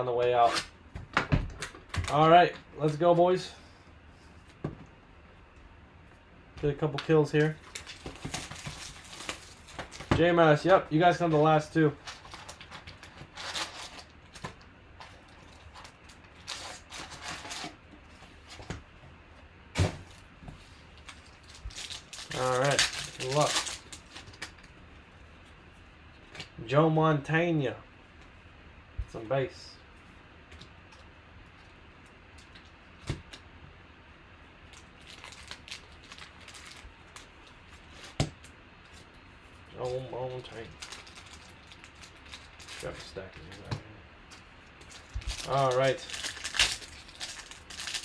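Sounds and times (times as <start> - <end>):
cards and packaging rustling: 7.0 - 18.7, 19.8 - 24.8, 34.7 - 38.2, 39.7 - 48.0
cards rustling and clicking: 21.0 - 24.6.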